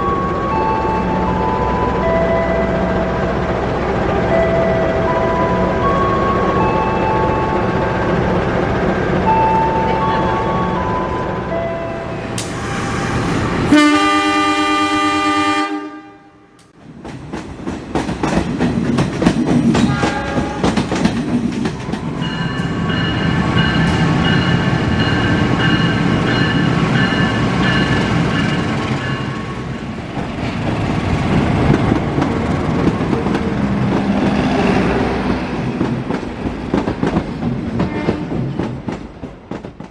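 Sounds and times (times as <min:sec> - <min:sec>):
train rumbling on rails: 0:00.0 - 0:15.7, 0:16.7 - 0:39.9
train horn: 0:11.8 - 0:16.7, 0:19.9 - 0:20.8, 0:37.8 - 0:38.4.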